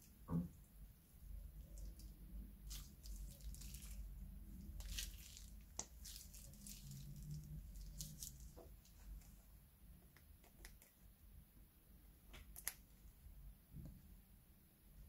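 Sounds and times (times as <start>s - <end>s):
slime squishing: 0.0s - 9.4s.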